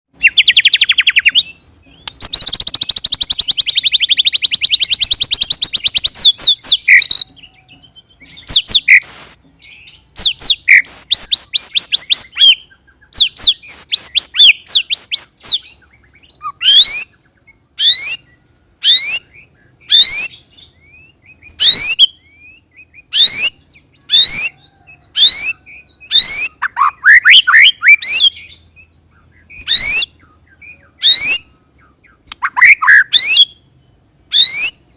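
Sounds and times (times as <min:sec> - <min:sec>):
bird song: 0:00.2 - 0:34.9.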